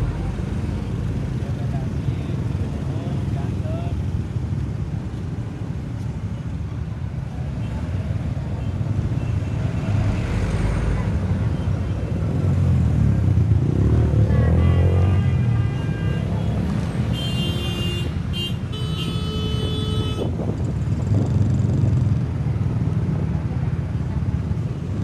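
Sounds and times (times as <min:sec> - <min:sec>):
traffic engines running: 0:00.0 - 0:25.0
car horns honking: 0:14.3 - 0:20.3.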